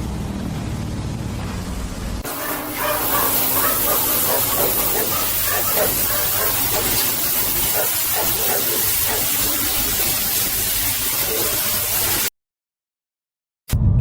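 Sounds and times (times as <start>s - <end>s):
steady hissing noise: 1.7s - 12.3s
faint voices: 2.3s - 10.0s.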